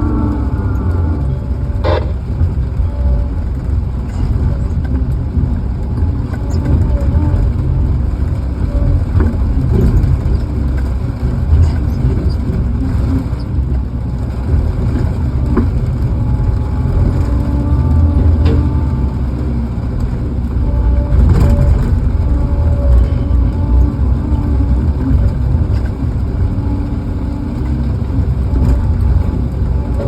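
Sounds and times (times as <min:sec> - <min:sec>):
faint wavering whines: 0:00.0 - 0:05.2
engine low rumble: 0:00.0 - 0:30.0.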